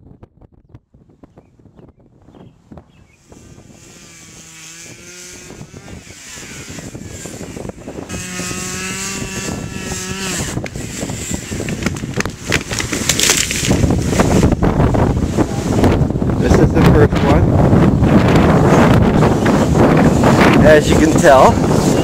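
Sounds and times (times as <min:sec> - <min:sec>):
chainsaw revving: 0:03.2 - 0:14.6
crackly noise: 0:11.6 - 0:14.6.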